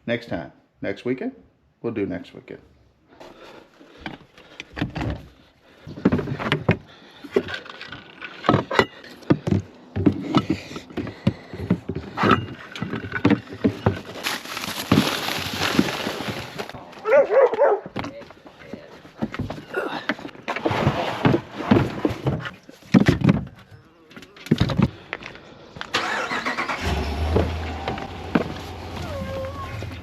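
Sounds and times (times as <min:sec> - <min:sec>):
knocks clunks and rattles: 0:04.0 - 0:15.2, 0:19.1 - 0:23.7, 0:26.8 - 0:30.0.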